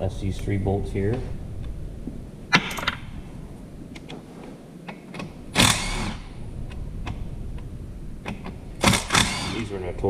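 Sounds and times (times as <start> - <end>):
metal tools clicking: 2.5 - 3.1
power tool burst: 5.5 - 6.4, 8.8 - 9.8.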